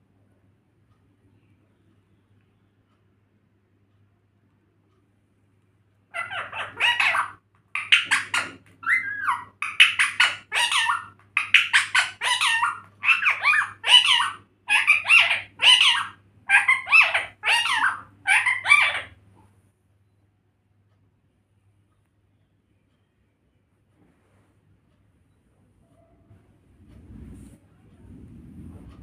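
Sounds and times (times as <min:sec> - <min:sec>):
parrot squawking speech-like: 0:06.1 - 0:19.2.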